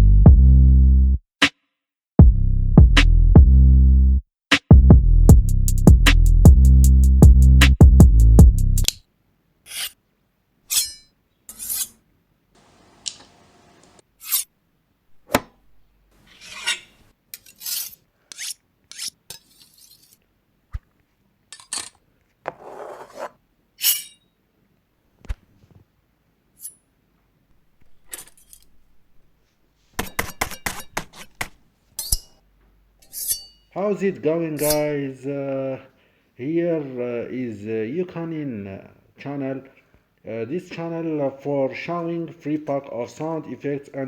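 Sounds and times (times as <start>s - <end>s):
knife blade scraping: 9.7s - 10.0s, 10.7s - 12.0s, 14.2s - 14.5s, 16.2s - 20.2s, 21.5s - 24.3s, 26.6s - 26.8s, 28.0s - 28.8s, 30.0s - 32.4s, 33.0s - 33.7s, 34.6s - 34.9s
knife slashes: 10.7s - 12.0s, 14.2s - 14.5s, 16.3s - 20.2s, 33.1s - 33.6s, 34.6s - 34.8s.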